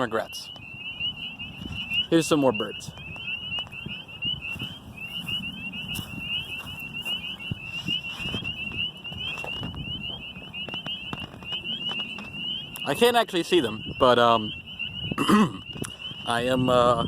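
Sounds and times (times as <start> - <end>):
chorus of high chirps: 0.0 - 17.0
wind rumble on microphone: 0.0 - 17.0.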